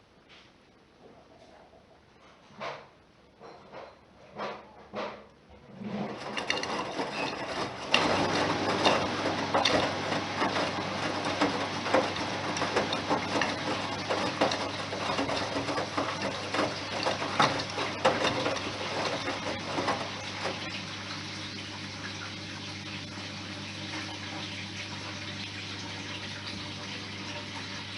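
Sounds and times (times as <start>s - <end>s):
washing machine motor hum: 5.5s - 27.9s
wet laundry tumbling in drum: 5.6s - 21.9s.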